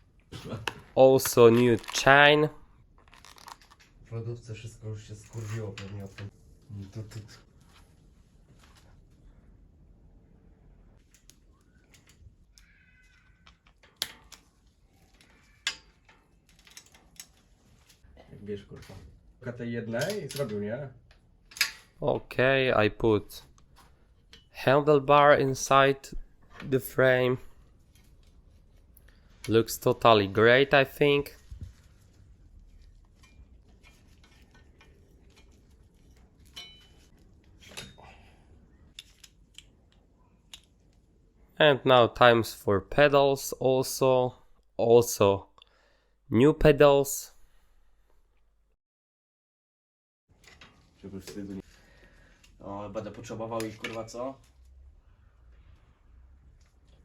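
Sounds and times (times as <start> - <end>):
metallic clicks of bicycle parts: 11.0 - 14.5, 15.1 - 17.5, 20.0 - 22.0, 38.9 - 41.0.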